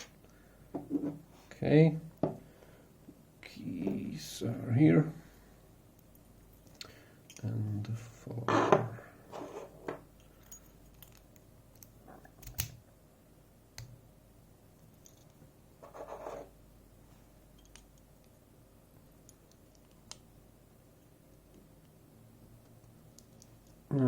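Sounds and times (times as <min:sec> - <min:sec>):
metal lock parts clicking: 0:10.4 - 0:12.8.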